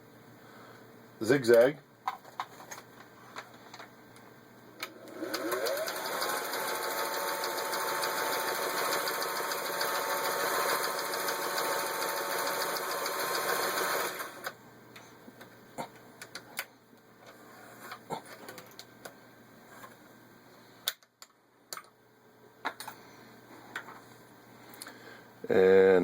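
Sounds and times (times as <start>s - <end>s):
sewing machine running: 5.0s - 14.5s.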